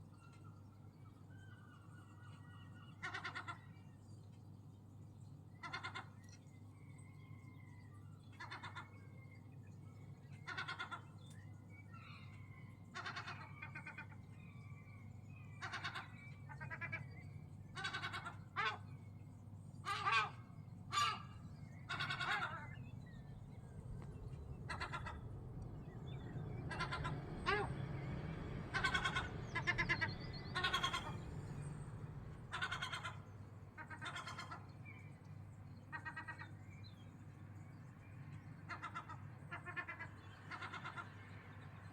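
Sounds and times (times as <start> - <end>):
steady low hum: 11.3 - 41.9
gulls calling: 15.4 - 37.0, 37.9 - 41.9.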